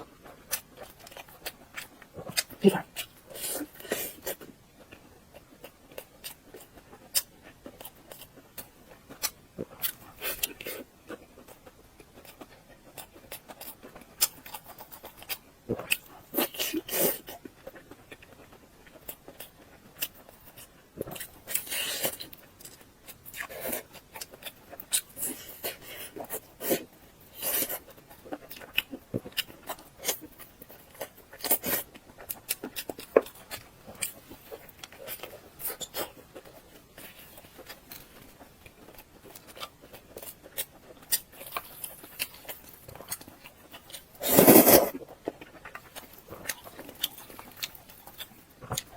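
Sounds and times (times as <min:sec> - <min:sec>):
wet chewing clicks and smacks: 0:27.8 - 0:44.2
slurping: 0:44.2 - 0:45.0.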